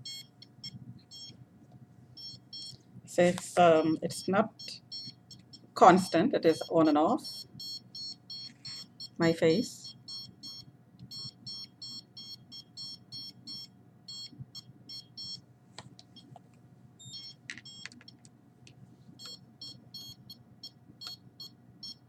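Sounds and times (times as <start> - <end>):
short high-pitched alarm beeps: 3.8 - 9.2, 9.8 - 14.3, 14.9 - 15.4, 19.2 - 22.0.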